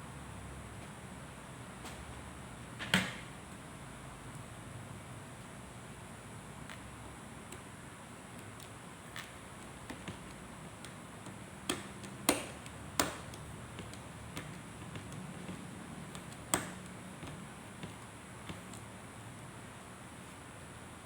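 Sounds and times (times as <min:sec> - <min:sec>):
small clicks and taps: 0:08.3 - 0:19.5.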